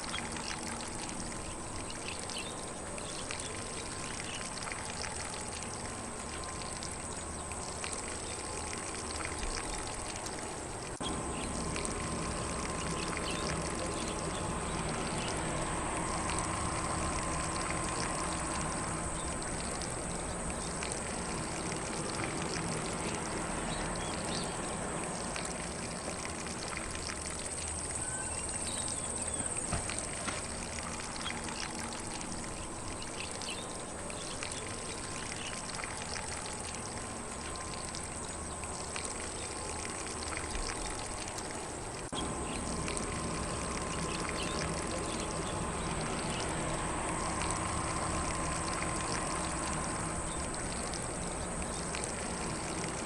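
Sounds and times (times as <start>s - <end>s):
faint birds: 0.0s - 53.0s
sprinkler spraying water: 0.0s - 53.0s.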